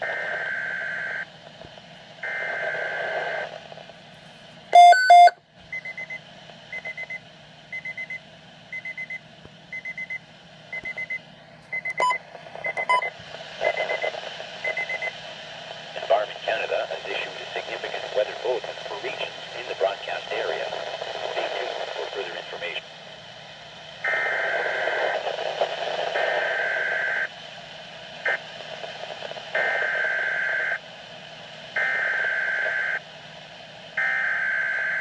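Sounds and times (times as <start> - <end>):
loud double tone: 4.8 - 5.4
short high beeps: 4.8 - 5.4.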